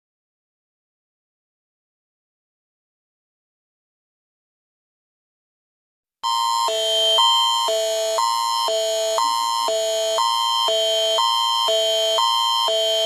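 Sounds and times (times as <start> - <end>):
steady high tone: 6.2 - 13.0.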